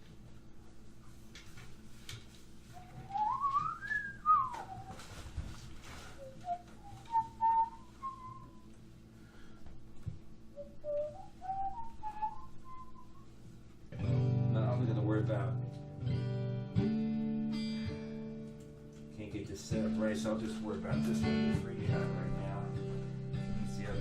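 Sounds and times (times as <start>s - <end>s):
person whistling: 2.7s - 5.3s, 6.0s - 8.7s, 10.6s - 13.3s.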